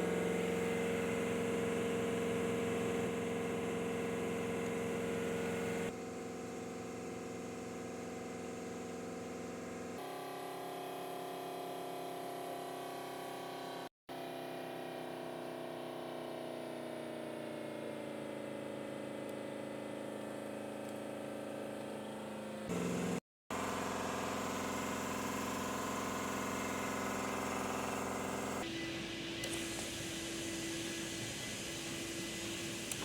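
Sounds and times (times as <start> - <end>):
vehicle engine idling: 18.0 - 28.7.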